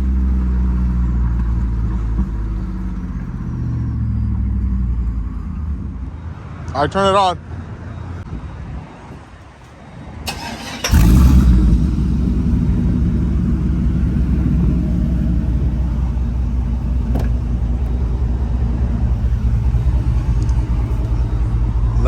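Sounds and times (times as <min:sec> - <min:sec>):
starter motor cranking: 0:10.3 - 0:11.5
engine deep idle rumble: 0:10.3 - 0:22.0.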